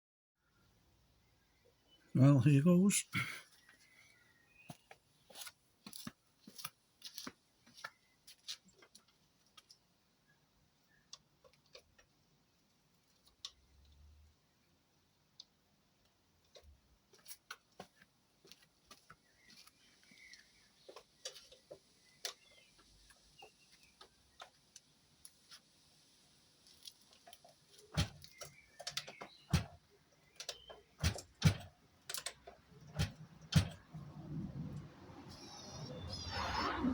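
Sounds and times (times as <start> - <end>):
faint bird chirps: 1.2 - 4.9, 19.2 - 21.4, 35.2 - 36.9.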